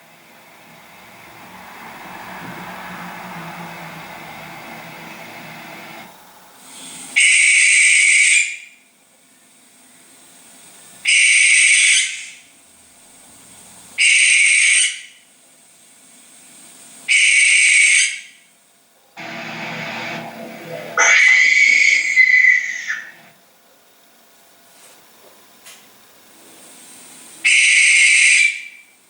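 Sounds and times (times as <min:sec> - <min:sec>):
barn owl screeching: 0:07.1 - 0:08.8, 0:11.1 - 0:12.5, 0:14.0 - 0:15.2, 0:17.1 - 0:18.4, 0:20.8 - 0:23.3, 0:27.4 - 0:28.8.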